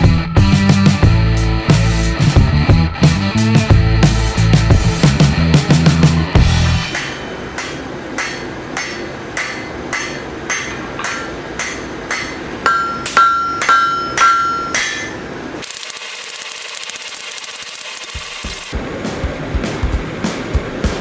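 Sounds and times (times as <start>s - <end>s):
hammer striking steel on anvil: 6.9s - 16.0s.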